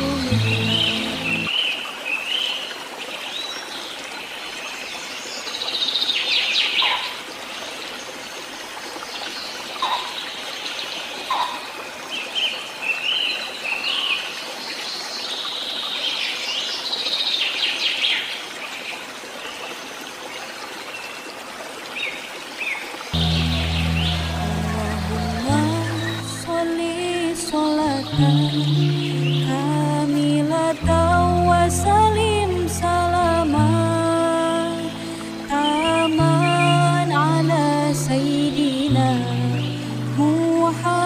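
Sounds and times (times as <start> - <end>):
low sustained musical tone: 0.0 - 1.5, 23.2 - 41.0
songbirds chirping and trilling: 0.0 - 18.3, 22.0 - 26.6, 27.3 - 29.8.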